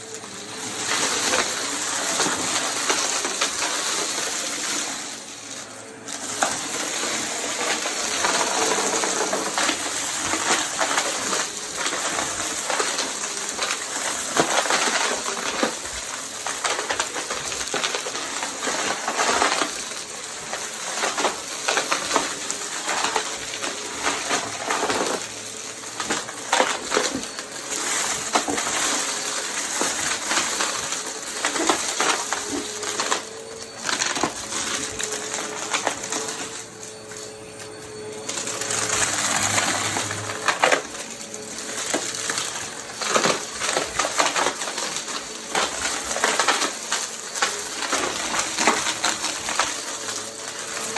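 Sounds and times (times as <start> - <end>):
vacuum cleaner running: 0.0 - 50.9
debris clicking and crackling: 7.6 - 50.9.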